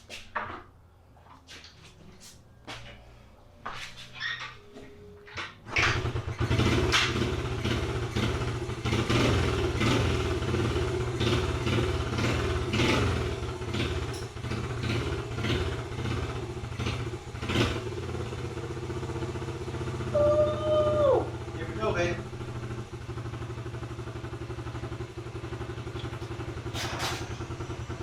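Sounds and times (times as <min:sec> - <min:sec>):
mini bike engine revving: 0:05.7 - 0:28.0.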